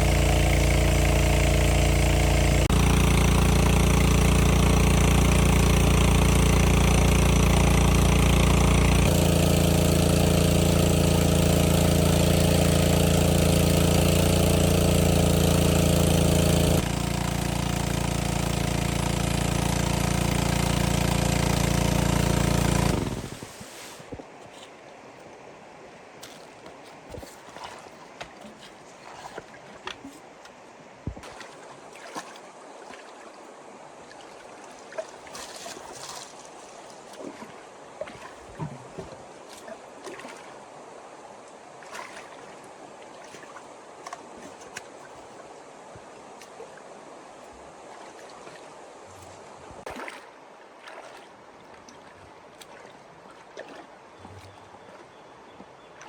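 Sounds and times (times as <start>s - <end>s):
water sloshing and splashing: 26.2s - 56.0s.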